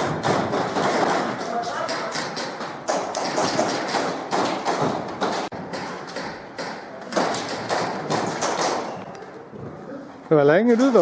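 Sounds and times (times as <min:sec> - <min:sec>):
footsteps thumping: 0:00.0 - 0:06.6.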